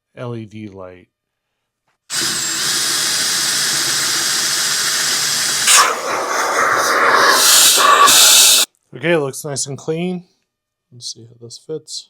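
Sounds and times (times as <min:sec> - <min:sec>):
pressurised spray hissing: 0:02.1 - 0:08.7.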